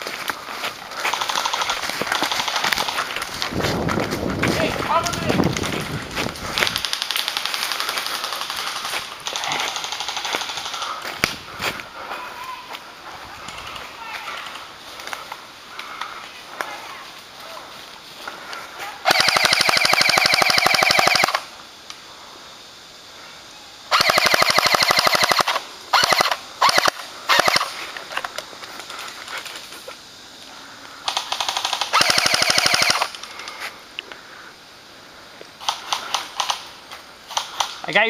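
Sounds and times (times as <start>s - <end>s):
airsoft guns firing bursts: 1.1s - 3.2s, 6.6s - 11.0s, 19.1s - 21.5s, 23.9s - 27.7s, 31.1s - 33.2s.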